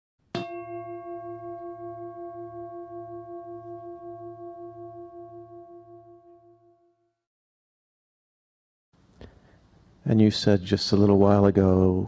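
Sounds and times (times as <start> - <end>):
bell ringing: 0.4 - 6.6.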